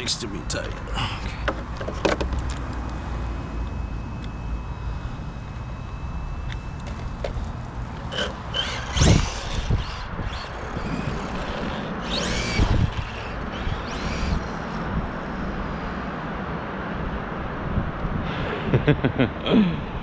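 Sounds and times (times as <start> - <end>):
electric motor whining: 1.5 - 16.3
tyres rumbling on ground: 6.8 - 16.1.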